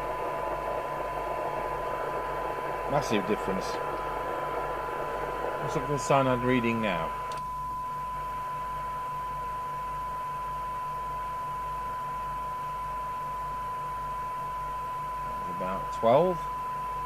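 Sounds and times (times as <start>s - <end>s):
radio receiver hiss: 0.0s - 7.5s
steady test tone: 0.0s - 8.9s
low mains hum: 0.0s - 17.0s.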